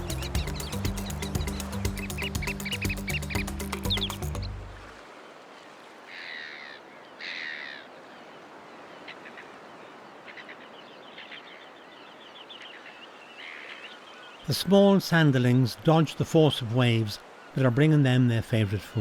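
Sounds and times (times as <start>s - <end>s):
small birds chirping: 0.0s - 4.6s
harsh caw-like bird calls: 6.0s - 8.2s, 8.9s - 11.6s, 12.6s - 14.5s.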